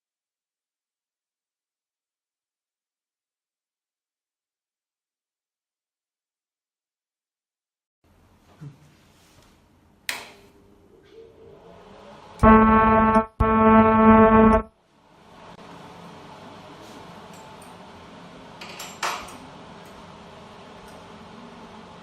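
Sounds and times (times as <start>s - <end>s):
buzzing warning horn blasts: 12.4s - 14.7s
machine humming: 12.4s - 14.7s.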